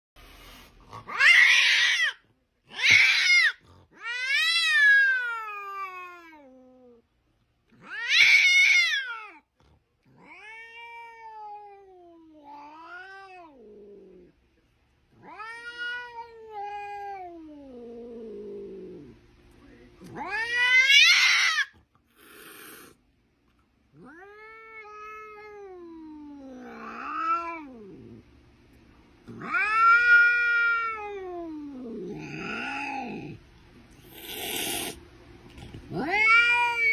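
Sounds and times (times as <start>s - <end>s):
cat meowing and yowling: 1.1s - 6.6s, 35.9s - 36.9s.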